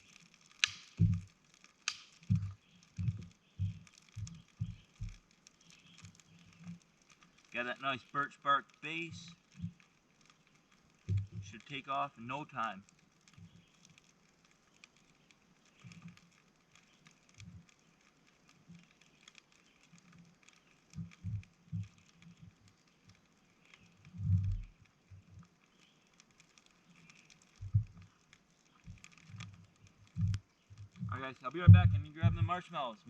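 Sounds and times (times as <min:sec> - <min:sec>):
campfire crackling and popping: 0:00.0 - 0:33.0
low dull thumps: 0:01.0 - 0:01.3, 0:02.2 - 0:05.2, 0:31.0 - 0:32.6.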